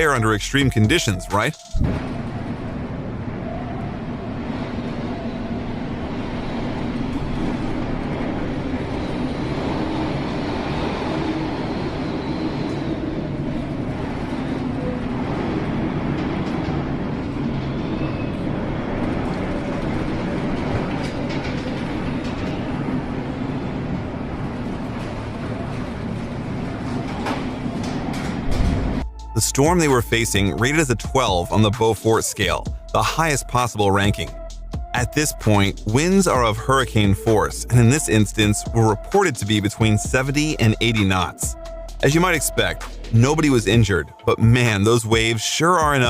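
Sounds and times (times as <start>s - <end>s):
low engine drone: 0.0s - 31.8s.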